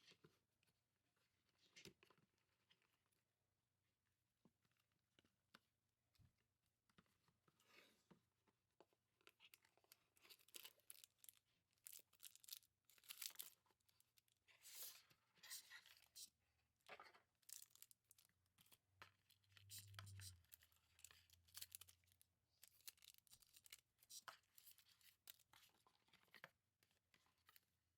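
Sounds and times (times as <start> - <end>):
packaging torn and rustled: 10.4 - 13.6, 20.9 - 23.9.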